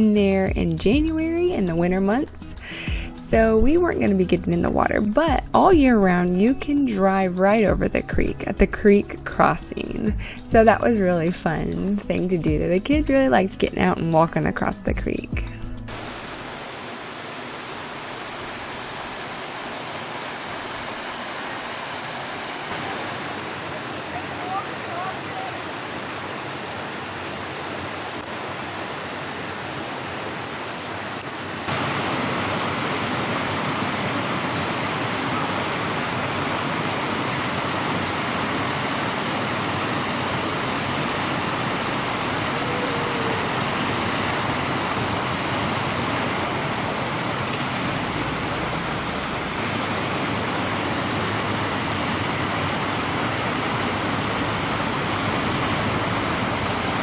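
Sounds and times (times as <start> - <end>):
creek water rushing: 15.9 - 57.0.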